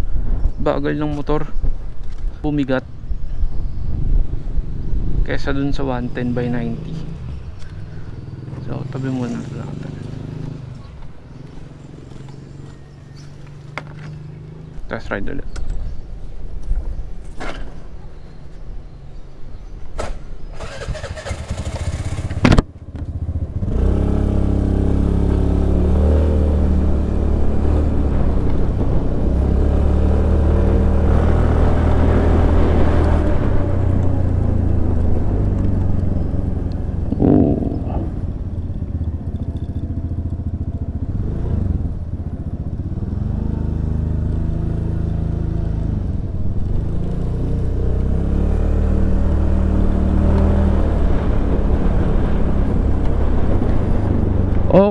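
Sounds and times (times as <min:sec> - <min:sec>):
wind and road noise: 0:00.0 - 0:54.9
scooter engine: 0:07.3 - 0:14.8, 0:20.5 - 0:50.4.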